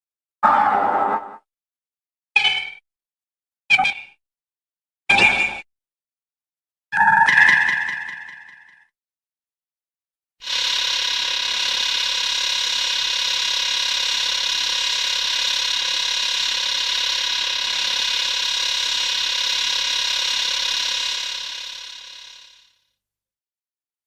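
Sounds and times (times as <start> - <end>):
high buzzing monster tone: 10.4 - 22.7.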